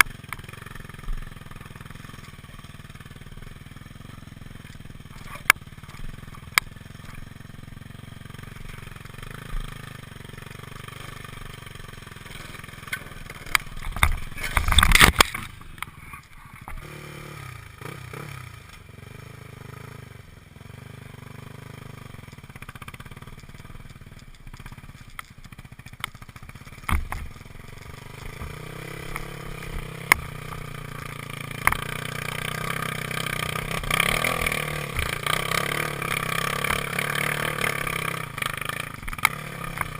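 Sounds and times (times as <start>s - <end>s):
dirt bike engine running: 0.0s - 39.9s
sharp clicks and knocks: 12.6s - 16.8s, 22.2s - 30.7s, 31.6s - 31.9s, 38.4s - 39.9s.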